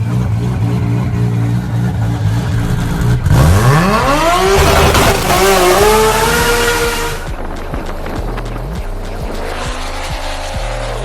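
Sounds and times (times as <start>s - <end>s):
vehicle engine idling and revving: 0.0s - 11.0s.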